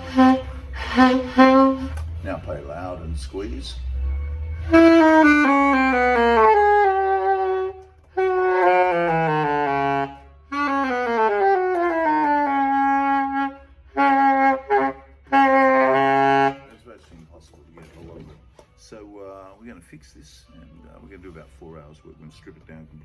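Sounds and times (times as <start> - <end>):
saxophone playing runs of notes: 0.0 - 2.1, 4.3 - 16.8.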